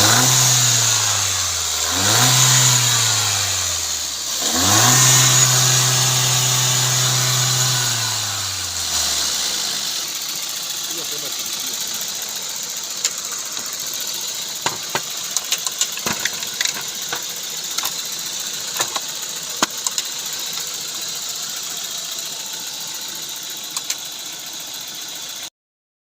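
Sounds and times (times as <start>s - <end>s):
car engine idling: 0.0s - 25.5s
sharp clicks: 23.8s - 24.0s.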